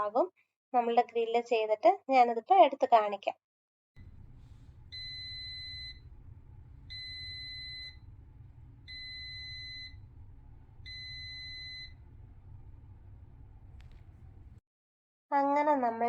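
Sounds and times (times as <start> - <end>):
electronic beeps: 4.9 - 6.1, 10.9 - 12.0.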